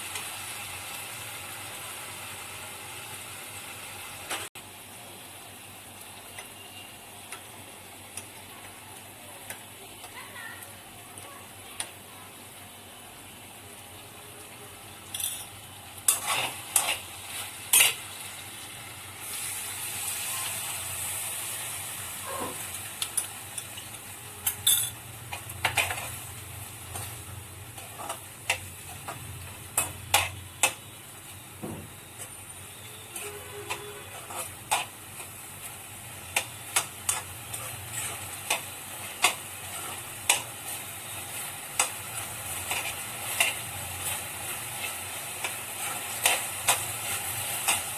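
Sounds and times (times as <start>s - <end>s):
food sizzling in a pan: 0.0s - 47.9s
utensil scraping a pan: 16.1s - 18.0s, 33.0s - 35.3s, 37.1s - 40.4s.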